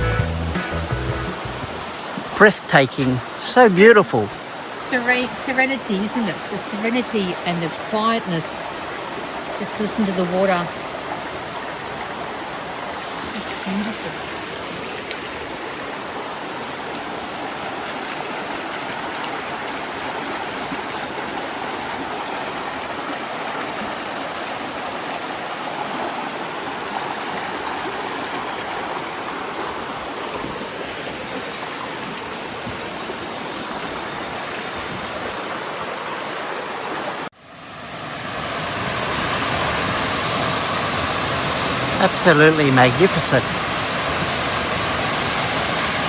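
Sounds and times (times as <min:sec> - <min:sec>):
creek water rushing: 0:00.0 - 0:46.0.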